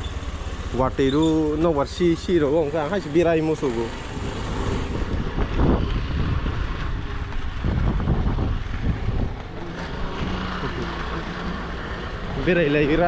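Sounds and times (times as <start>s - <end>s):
vehicle rumble: 0.0s - 13.0s
wind buffeting microphone: 4.2s - 10.9s.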